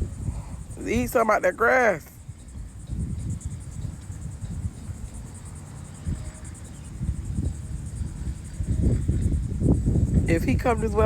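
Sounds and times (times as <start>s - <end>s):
low rumbling noise: 0.0s - 1.0s
crickets chirping: 0.0s - 11.0s.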